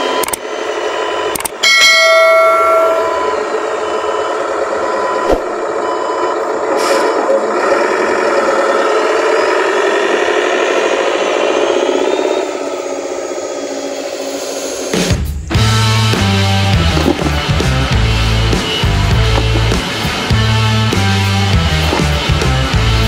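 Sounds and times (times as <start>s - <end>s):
model truck motor whirring: 3.9s - 14.9s.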